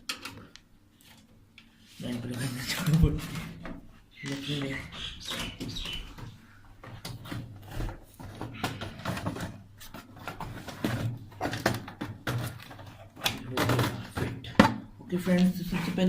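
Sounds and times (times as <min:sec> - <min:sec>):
hardware clicks and knocks: 0:05.3 - 0:14.9.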